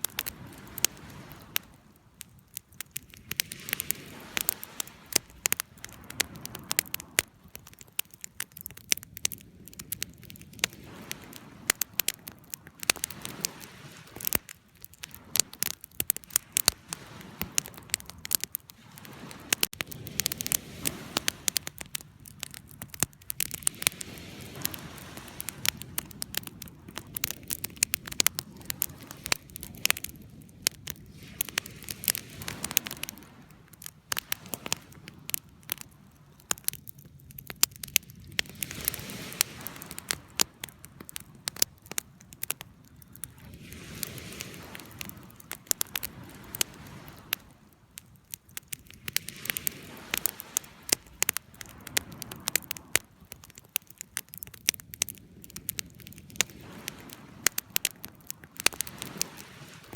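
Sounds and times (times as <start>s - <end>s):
soft hiss of burning: 0.0s - 59.9s
wood fire crackling and popping: 0.0s - 59.9s.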